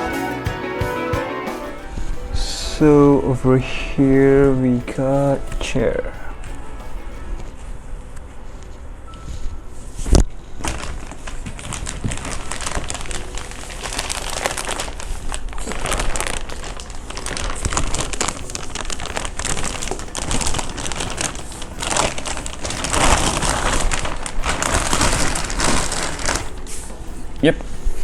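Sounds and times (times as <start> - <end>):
packaging rustling and crinkling: 10.1 - 28.0.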